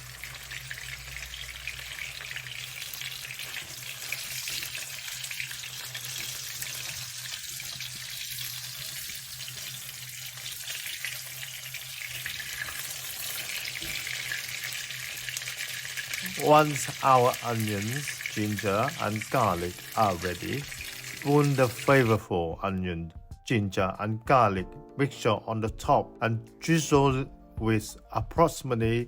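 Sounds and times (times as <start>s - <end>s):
onions frying in hot oil: 0.0s - 22.2s.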